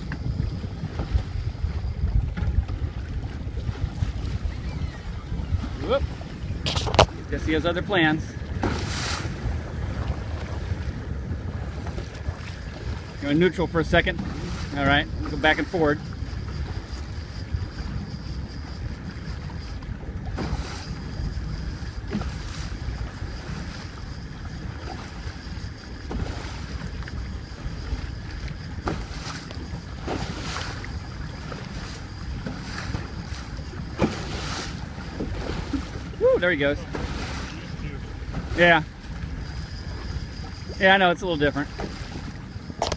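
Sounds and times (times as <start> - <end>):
boat motor running: 0.0 - 42.9
water washing against hull: 0.0 - 42.9
wind buffeting microphone: 0.0 - 42.9.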